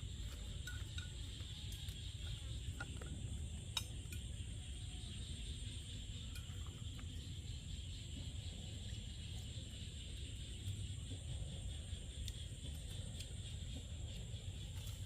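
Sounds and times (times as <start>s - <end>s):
crickets droning: 0.0s - 15.0s.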